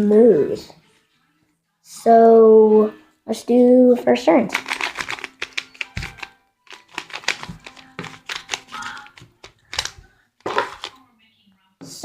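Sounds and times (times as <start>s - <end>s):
puzzle cube plastic clicks: 4.5s - 11.0s.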